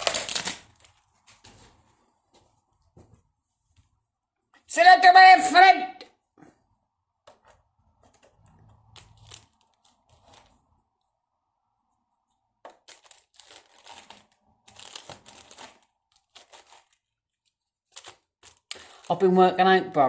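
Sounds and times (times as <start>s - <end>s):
packaging crinkling and tearing: 0.0s - 1.5s, 8.1s - 10.8s, 12.6s - 19.3s.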